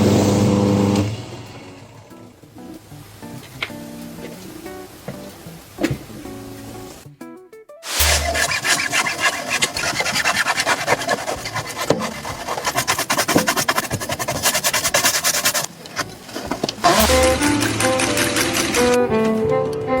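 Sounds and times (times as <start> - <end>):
string music: 6.2 - 13.6, 16.0 - 20.0
tool scraping a shoe: 7.9 - 19.0.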